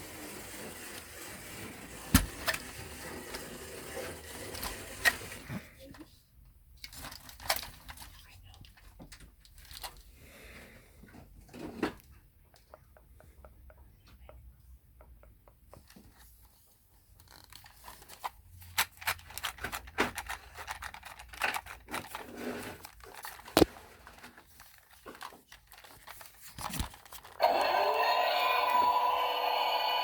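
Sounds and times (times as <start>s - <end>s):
plastic toy handling clicks: 17.2s - 22.2s
toy electronic sound effect: 27.4s - 30.0s.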